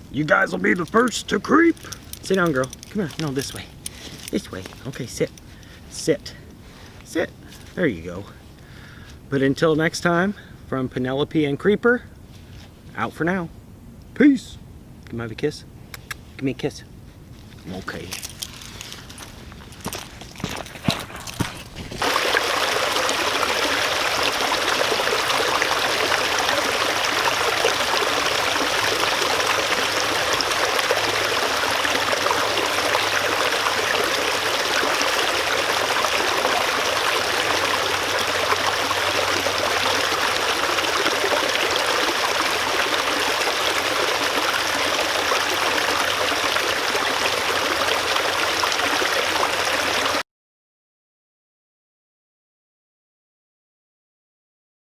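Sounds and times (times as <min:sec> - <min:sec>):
stream water flowing: 0:00.0 - 0:08.1, 0:17.7 - 0:50.2.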